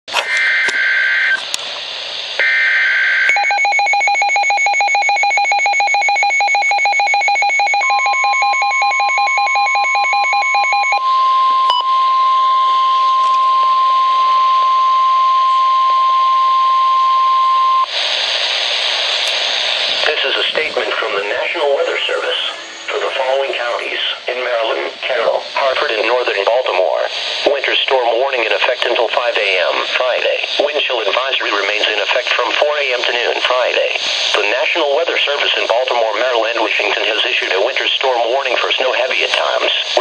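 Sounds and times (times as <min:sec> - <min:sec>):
radio static: 0:00.1 - 0:17.2, 0:17.8 - 0:40.0
steady warning alarm tone: 0:00.2 - 0:01.4, 0:02.4 - 0:18.2, 0:20.0 - 0:40.0
rapid pulsing alarm beep: 0:02.4 - 0:17.9.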